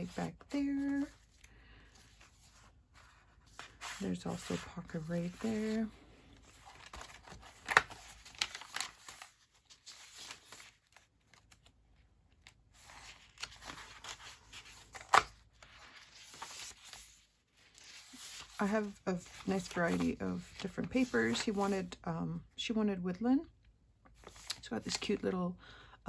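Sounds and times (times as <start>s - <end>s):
paper pages rustling: 0.0s - 21.8s, 24.2s - 25.2s.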